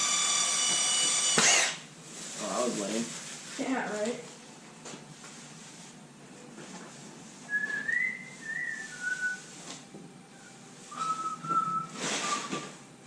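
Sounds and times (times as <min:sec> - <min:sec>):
person whistling a tune: 0:07.5 - 0:09.5, 0:10.9 - 0:12.8.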